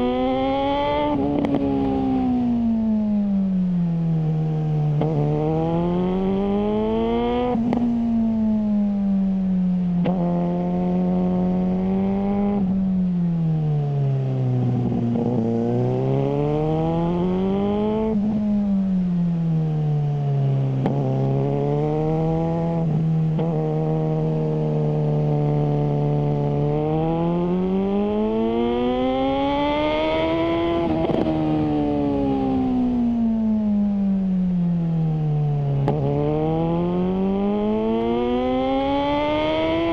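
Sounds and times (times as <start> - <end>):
motorcycle engine revving: 0.0 - 3.4, 4.4 - 9.1, 10.0 - 13.3, 13.9 - 34.1, 35.6 - 39.9.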